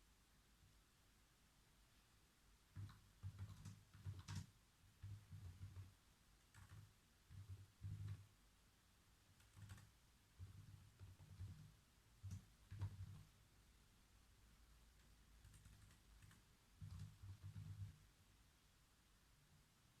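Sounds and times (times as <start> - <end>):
computer keyboard typing: 2.7 - 5.9, 6.5 - 8.3, 9.4 - 13.3, 15.0 - 18.0.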